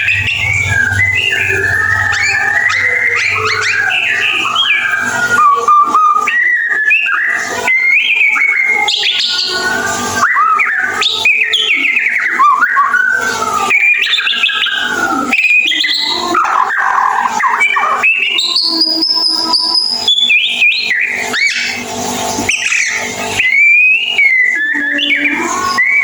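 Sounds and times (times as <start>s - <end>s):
bird singing whistled notes: 0.0s - 26.0s.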